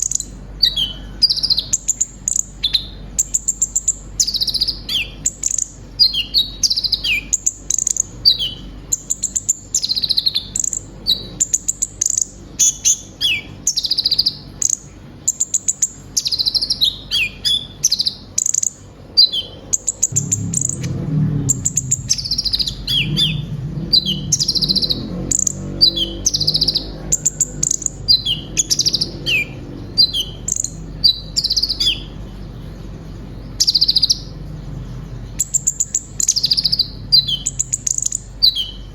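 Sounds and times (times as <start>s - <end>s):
bird singing chirps and trills: 0.0s - 38.9s
low rumble: 20.0s - 35.5s.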